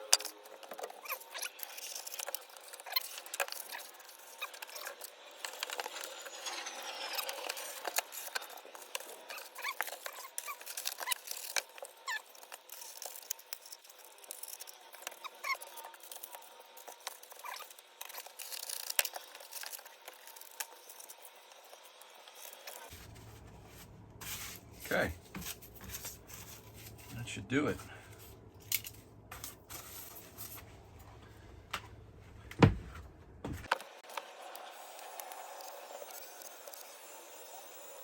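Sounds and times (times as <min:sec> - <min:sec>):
light scrapes: 0:22.7 - 0:31.2.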